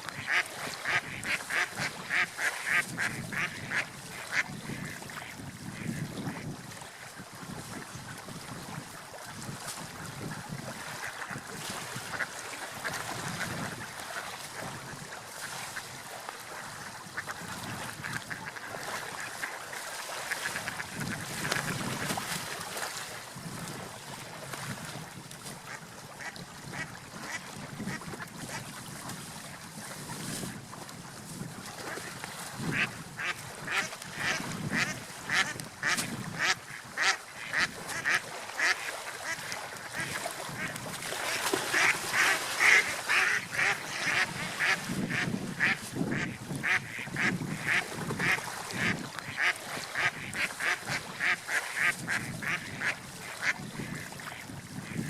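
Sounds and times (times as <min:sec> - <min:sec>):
ducks quacking: 0:00.0 - 0:06.4, 0:17.1 - 0:19.7, 0:20.3 - 0:22.2, 0:32.7 - 0:55.0.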